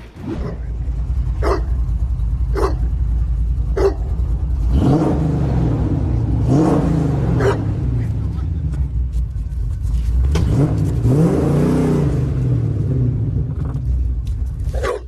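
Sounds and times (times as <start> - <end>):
low rumble: 0.0 - 11.0
dog barking: 1.4 - 1.8, 2.5 - 2.9, 3.7 - 4.1, 7.4 - 7.8, 14.7 - 15.0.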